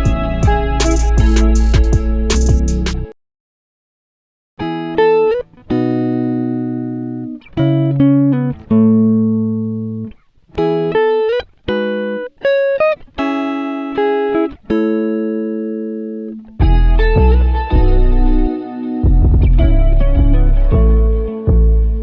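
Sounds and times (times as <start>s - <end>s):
melody of plucked single notes: 0.0s - 3.1s, 13.2s - 22.0s.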